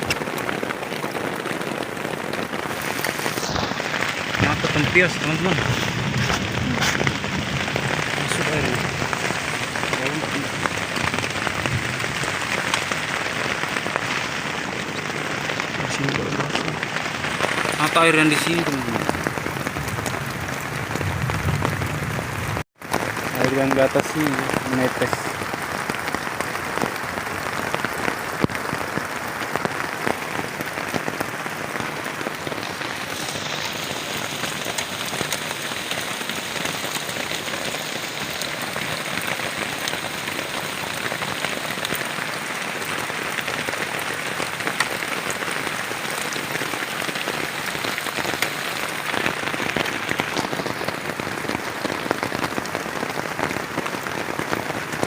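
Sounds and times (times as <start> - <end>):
heavy rain on plastic tarp: 0.0 - 55.0.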